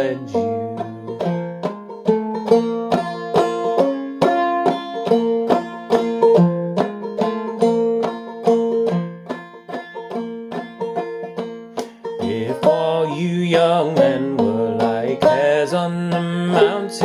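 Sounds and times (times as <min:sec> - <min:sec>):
banjo plucked notes: 0:00.0 - 0:17.0.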